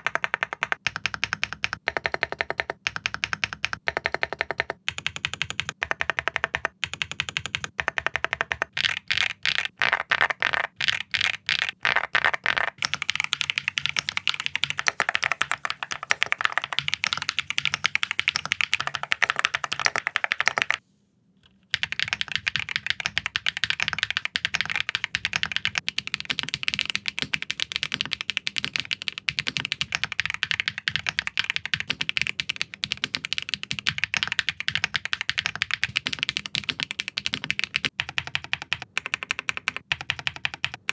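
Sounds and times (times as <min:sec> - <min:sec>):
fast mechanical keyboard typing: 0:00.0 - 0:20.8, 0:21.7 - 0:40.9.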